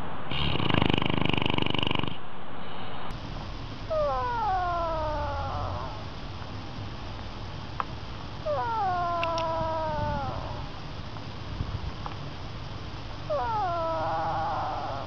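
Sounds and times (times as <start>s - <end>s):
cat meowing: 3.9s - 6.1s, 8.4s - 10.8s, 13.3s - 15.0s.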